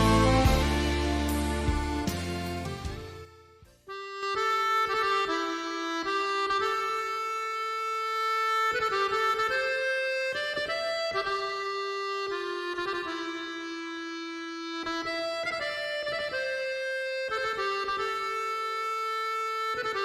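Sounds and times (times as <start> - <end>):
reedy melody over a drone: 0.0 - 3.4.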